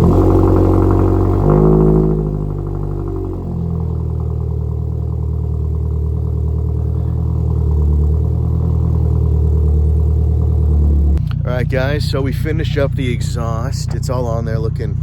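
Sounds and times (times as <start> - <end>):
car engine revving then idling: 0.0 - 15.0.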